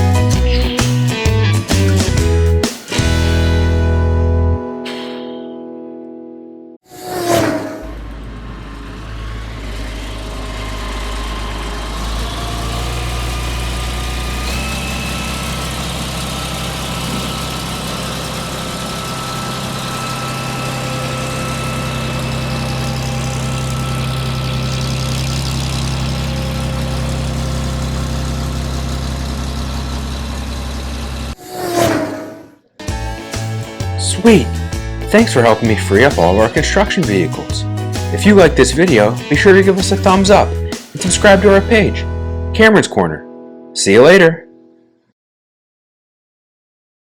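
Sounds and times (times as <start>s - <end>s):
truck diesel engine running: 7.8s - 31.4s, 32.8s - 42.6s.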